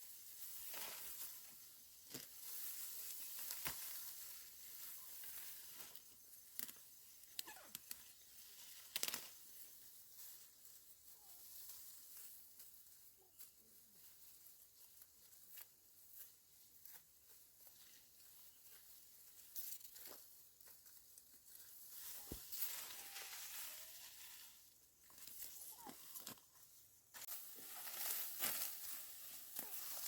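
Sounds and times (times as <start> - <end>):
dry plants rustling and crackling: 0.0 - 30.0
soft snaps and clicks: 8.9 - 9.3.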